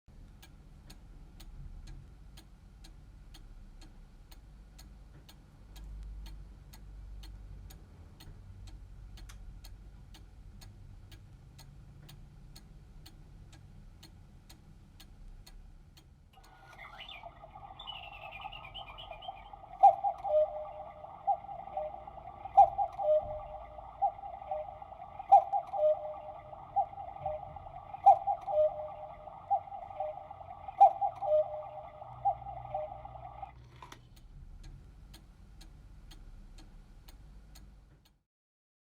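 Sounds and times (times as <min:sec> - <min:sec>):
clock ticking: 0:00.2 - 0:38.2
electronic clock tune: 0:16.4 - 0:33.6.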